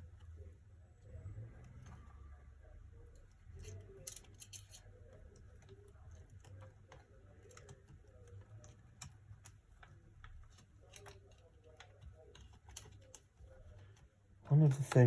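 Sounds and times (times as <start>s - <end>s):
small clicks and taps: 3.0s - 14.1s.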